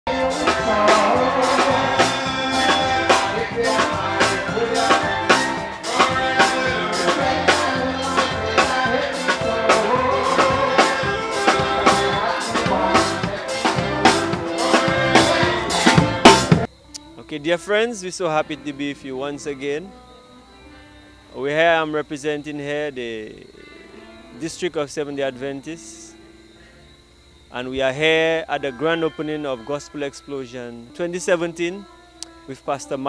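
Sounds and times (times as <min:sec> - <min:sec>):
upbeat music with drum beat: 0:00.1 - 0:16.7.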